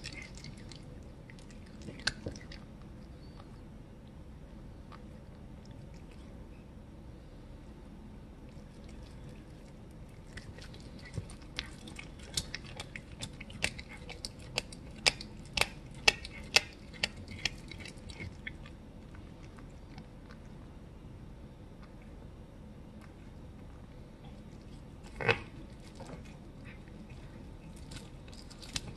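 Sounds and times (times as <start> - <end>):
cat crunching on bone: 0.0 - 3.5, 8.4 - 20.8, 22.9 - 28.9.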